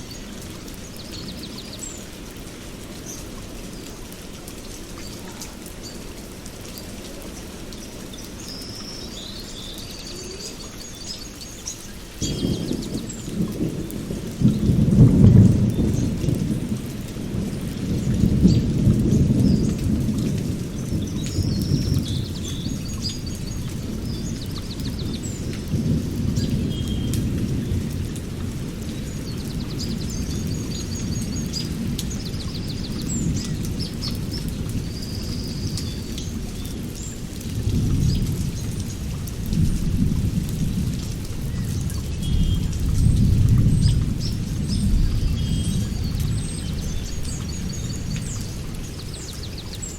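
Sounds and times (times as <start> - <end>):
birds chirping and trilling: 7.4 - 13.4, 43.7 - 49.9.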